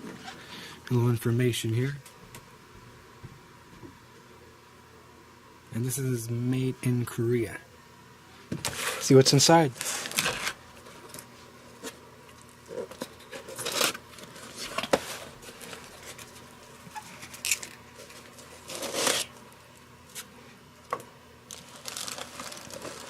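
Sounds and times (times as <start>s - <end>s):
cardboard packaging rustling: 9.7s - 11.2s, 12.6s - 19.4s, 21.5s - 23.0s.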